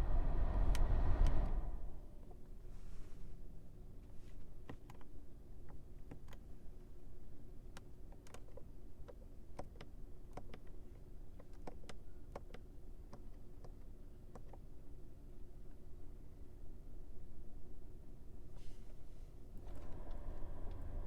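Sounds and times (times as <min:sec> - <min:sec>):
steady low hum: 0:00.0 - 0:03.8, 0:14.2 - 0:21.0.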